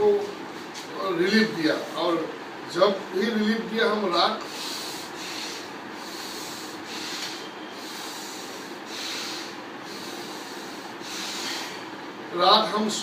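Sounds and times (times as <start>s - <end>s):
steady hiss: 3.4s - 13.0s
man breathing through nose: 4.4s - 12.0s.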